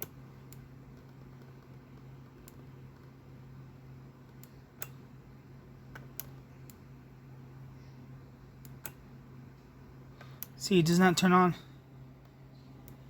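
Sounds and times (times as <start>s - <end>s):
steady low hum: 0.0s - 13.0s
switch clicks: 4.4s - 5.0s, 8.6s - 9.0s.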